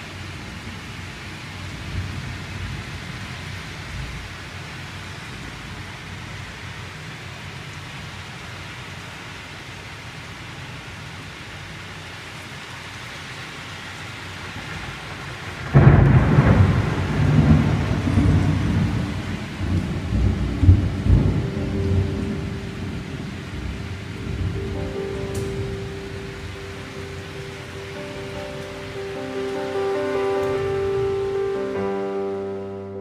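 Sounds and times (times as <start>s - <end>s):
heavy rain: 0.0s - 33.0s
loud thunderclap and rumble: 14.6s - 24.8s.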